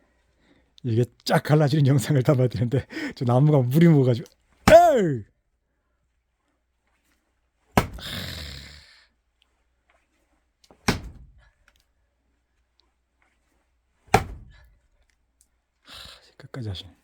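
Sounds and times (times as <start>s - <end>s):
axe chopping wet log: 4.7s - 5.1s, 7.8s - 8.1s, 10.8s - 11.3s, 14.1s - 14.5s.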